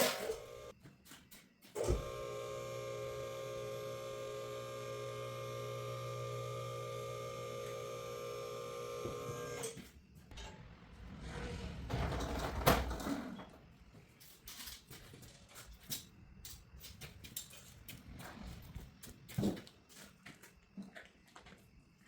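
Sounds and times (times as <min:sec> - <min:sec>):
electrical hum: 0:00.0 - 0:00.7, 0:01.8 - 0:09.6
tools and metal parts clanking: 0:14.2 - 0:18.3.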